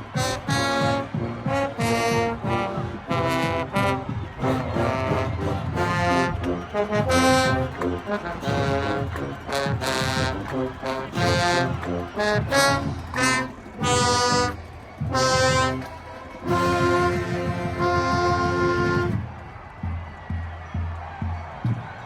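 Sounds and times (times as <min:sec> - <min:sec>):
brass band blasts: 0:00.0 - 0:19.7
drums: 0:00.0 - 0:22.0.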